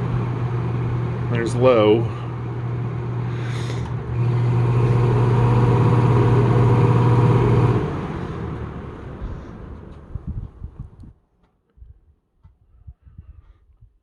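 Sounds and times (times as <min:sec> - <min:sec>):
box fan running: 0:00.0 - 0:11.2.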